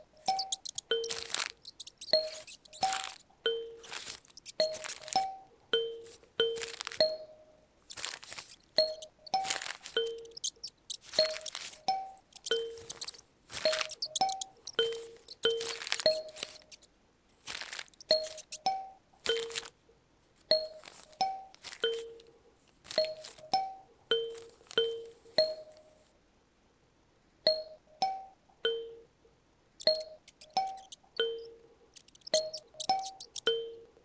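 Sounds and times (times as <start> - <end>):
paper rustling: 0.0 - 3.2, 3.8 - 5.4, 6.0 - 7.2, 7.8 - 19.8, 20.4 - 23.7, 24.3 - 26.0, 29.8 - 31.2, 32.0 - 33.5.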